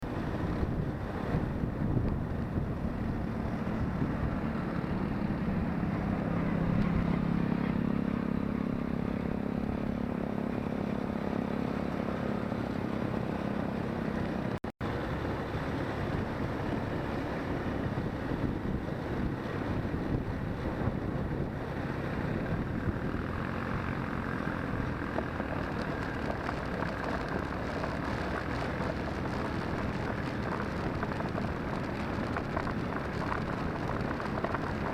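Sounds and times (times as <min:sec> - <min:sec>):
atv engine droning: 0:00.0 - 0:34.9.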